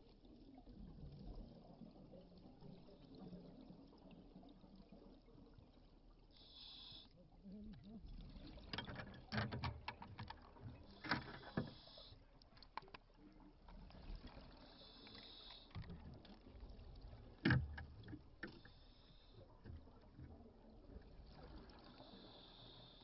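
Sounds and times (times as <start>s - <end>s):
underwater clicks and knocks: 8.5s - 11.8s, 12.4s - 13.1s, 17.0s - 18.8s, 19.6s - 21.2s.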